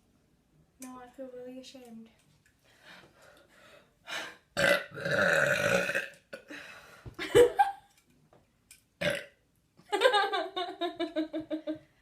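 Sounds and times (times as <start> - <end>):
person burping: 4.6 - 6.5, 9.0 - 9.4.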